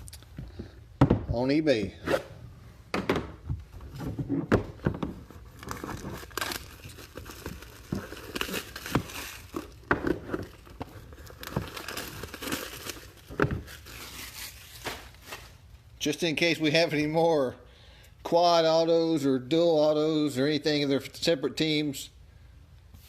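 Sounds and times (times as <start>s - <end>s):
plastic wrapping crinkling: 3.8s - 15.7s.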